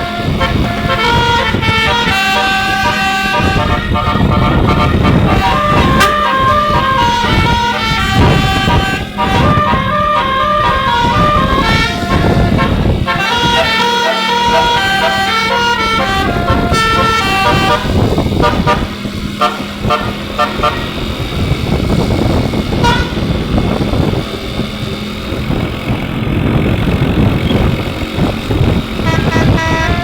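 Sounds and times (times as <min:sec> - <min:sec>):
short horn note: 0:00.0 - 0:20.9, 0:29.0 - 0:30.0
musical bus horn melody: 0:00.0 - 0:25.5, 0:27.5 - 0:30.0
bus engine hum: 0:00.0 - 0:30.0.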